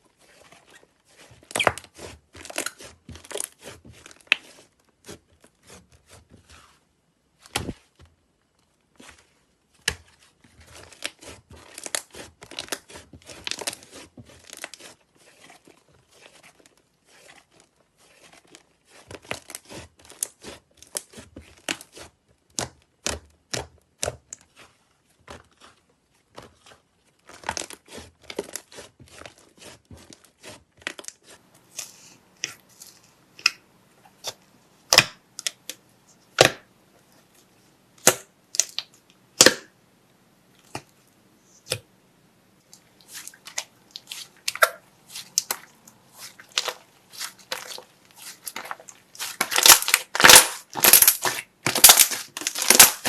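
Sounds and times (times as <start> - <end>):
slime clicking and crackling: 43.1 - 53.0.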